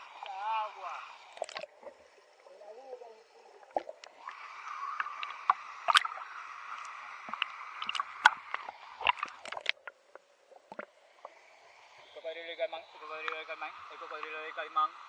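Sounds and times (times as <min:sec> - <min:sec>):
water splashing and gurgling: 0:01.2 - 0:02.0, 0:03.6 - 0:11.2.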